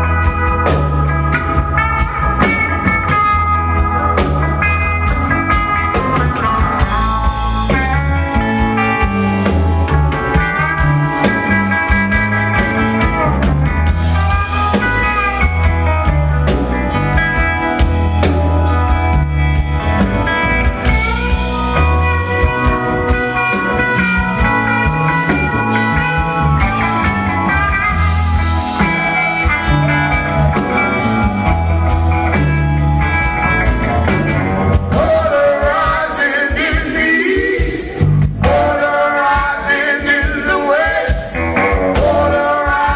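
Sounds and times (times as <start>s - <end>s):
blues band playing live: 0.0s - 42.9s.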